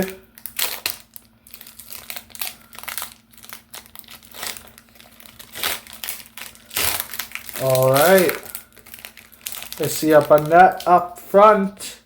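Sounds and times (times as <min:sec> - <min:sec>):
foil wrapper crinkling: 0:00.0 - 0:11.3.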